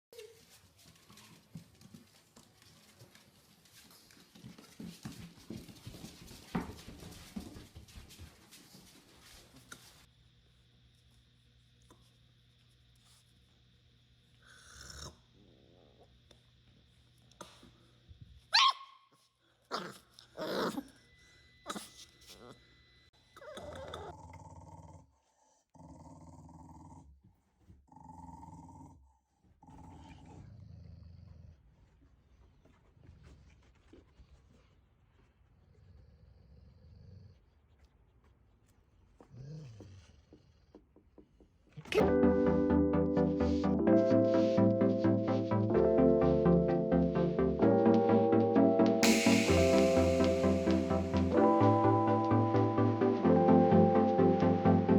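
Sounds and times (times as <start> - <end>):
dog growling: 19.7 - 21.0, 23.4 - 27.2, 27.9 - 31.8.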